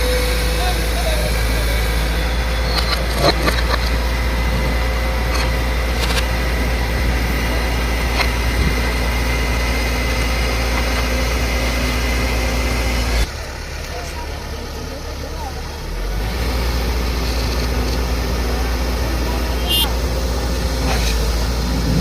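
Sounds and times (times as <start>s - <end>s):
excavator diesel engine running: 0.0s - 22.0s.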